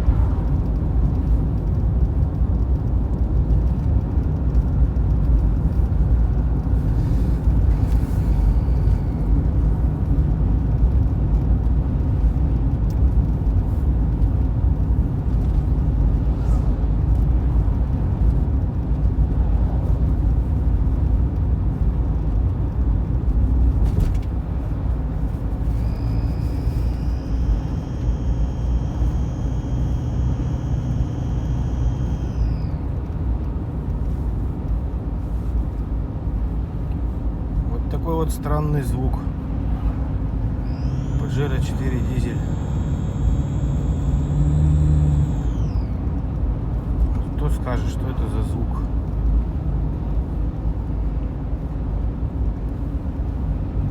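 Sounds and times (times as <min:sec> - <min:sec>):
engine and road rumble: 0:00.0 - 0:53.9
high thin whistle: 0:25.6 - 0:32.8, 0:40.6 - 0:46.0.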